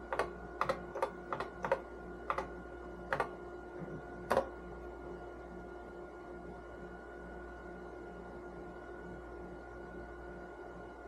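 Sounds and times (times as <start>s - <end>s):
steady machine hum: 0.0s - 11.0s
keyboard key clicks: 0.1s - 2.5s, 3.1s - 3.3s.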